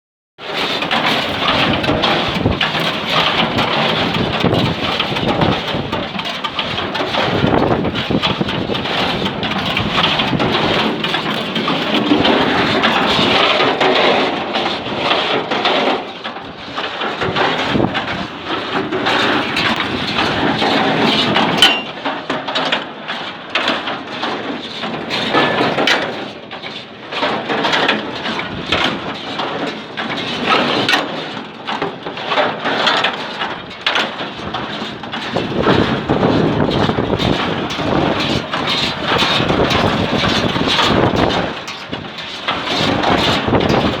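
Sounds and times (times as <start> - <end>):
baler running: 17.2 - 21.6
clattering knocks: 17.2 - 22.0.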